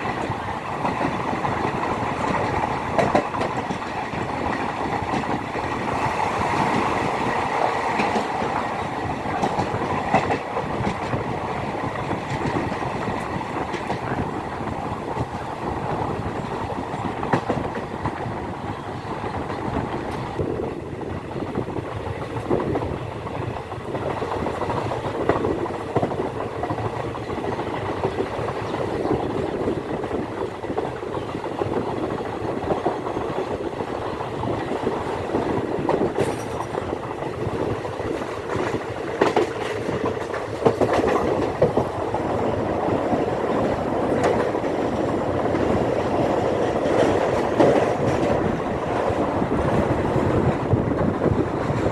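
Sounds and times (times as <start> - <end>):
train coaches rumbling: 0.0 - 51.9
wheels clicking over rail joints: 0.0 - 51.9
sharp clanks: 36.1 - 36.8.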